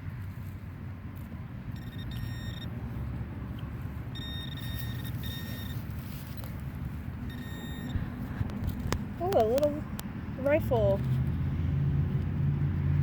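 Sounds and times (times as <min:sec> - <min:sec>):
metal detector beeps: 0:01.7 - 0:02.8, 0:03.5 - 0:06.6, 0:07.2 - 0:08.3.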